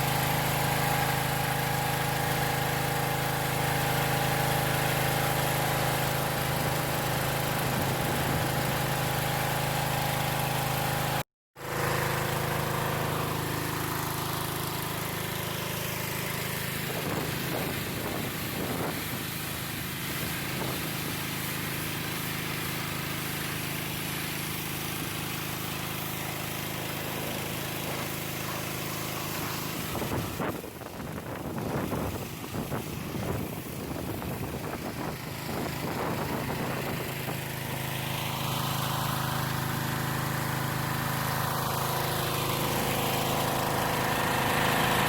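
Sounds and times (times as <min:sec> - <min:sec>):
small gas engine running: 0:00.0 - 0:45.0
water jet hissing: 0:11.8 - 0:30.8.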